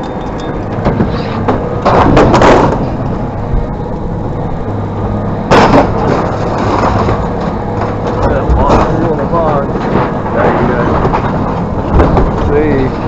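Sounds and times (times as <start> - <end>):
steady low hum: 0.0 - 13.0
scrap metal crashing: 0.9 - 3.1, 5.5 - 13.0.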